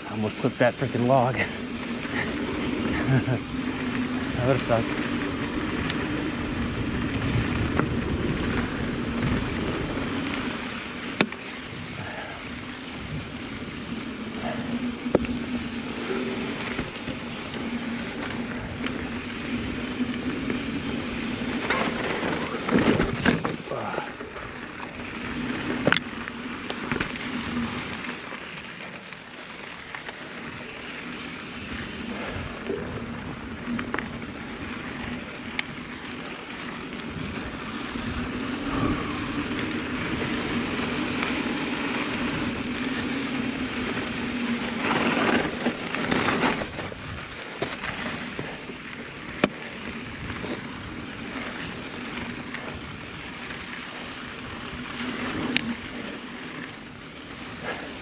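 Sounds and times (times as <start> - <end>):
tyre and wind rush: 0.0 - 28.2, 36.7 - 49.0
bike knocks and rattles: 14.9 - 23.8, 39.0 - 49.6.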